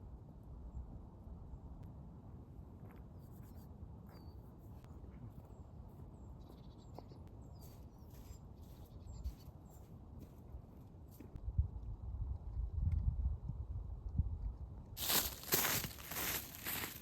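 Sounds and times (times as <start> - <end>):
small bird chirping: 3.4 - 9.9.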